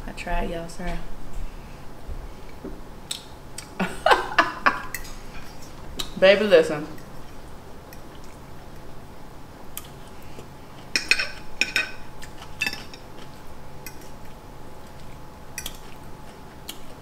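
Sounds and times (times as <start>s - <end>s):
forks clinking against plates: 10.9s - 13.2s.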